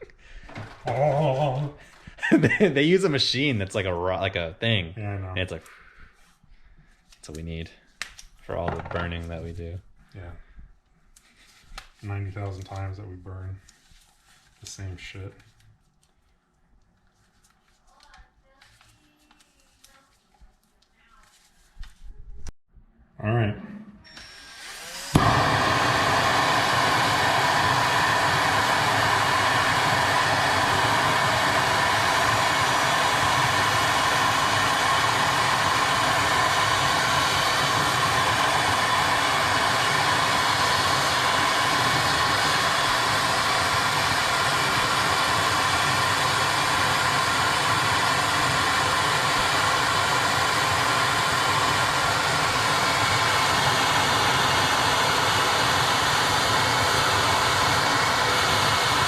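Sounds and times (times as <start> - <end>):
gas torch hissing: 24.2 - 59.0.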